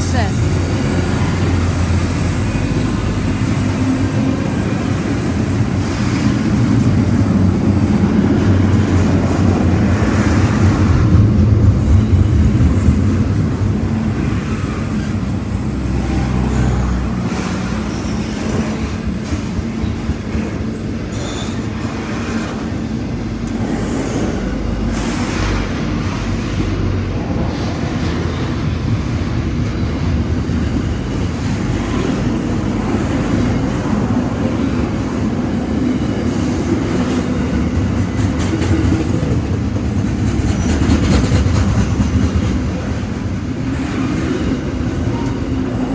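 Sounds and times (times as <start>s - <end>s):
freight train rumbling past: 0.0s - 45.9s
train wheel clicks: 38.0s - 42.9s.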